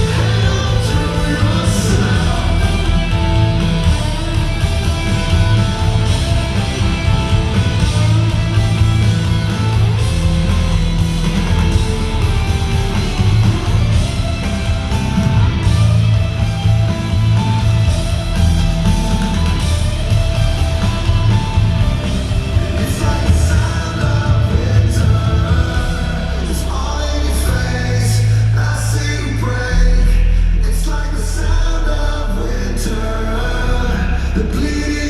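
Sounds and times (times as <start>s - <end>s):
live rock band playing: 0.0s - 26.9s.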